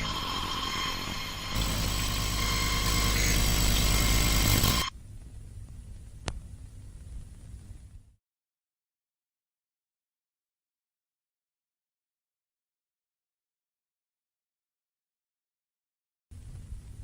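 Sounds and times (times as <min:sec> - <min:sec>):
harsh static noise: 0:00.1 - 0:05.0.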